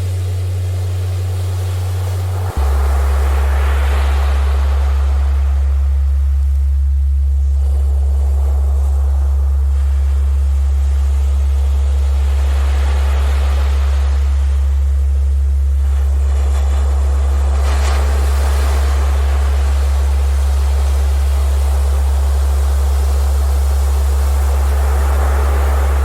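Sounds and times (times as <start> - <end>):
deep generated tone: 0.0 - 26.0
ocean surf: 0.9 - 6.0, 24.0 - 26.0.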